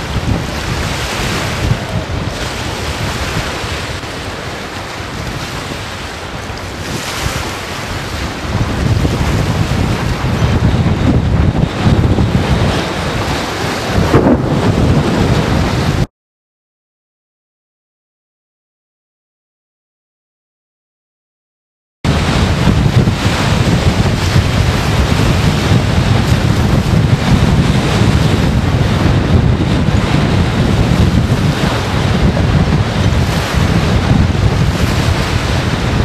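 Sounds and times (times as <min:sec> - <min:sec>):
storm wind buffeting microphone: 0:00.0 - 0:16.1, 0:22.1 - 0:36.0
heavy low rumble: 0:08.7 - 0:16.1.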